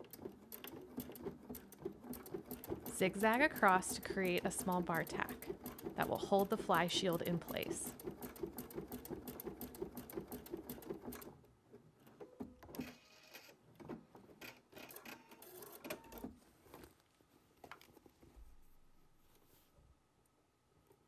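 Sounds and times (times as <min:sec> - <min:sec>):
sewing machine stitching: 0:00.0 - 0:11.4, 0:12.0 - 0:16.3.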